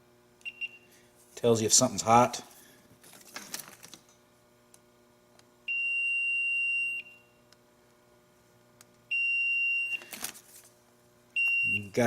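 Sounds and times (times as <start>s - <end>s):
voltage tester beeping: 0.4s - 0.9s, 5.7s - 7.4s, 9.1s - 10.2s, 11.4s - 12.0s.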